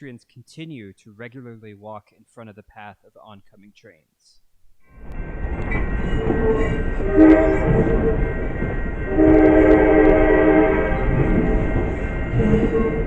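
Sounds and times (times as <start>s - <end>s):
moving train rumble: 4.8s - 13.0s
train horn blasts: 5.0s - 13.0s.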